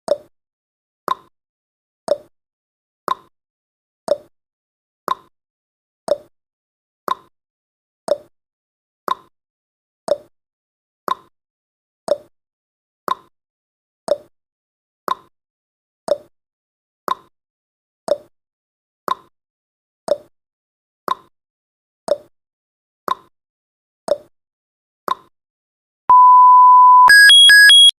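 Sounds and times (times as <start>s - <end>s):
rapid alarm beeps: 26.1s - 28.0s
steady beep: 26.1s - 28.0s.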